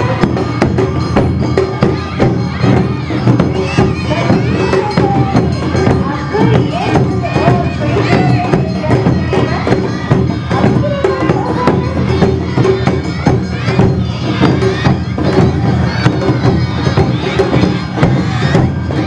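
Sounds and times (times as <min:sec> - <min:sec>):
crowd voices: 0:00.0 - 0:19.0
drums and bells beating: 0:00.0 - 0:19.0.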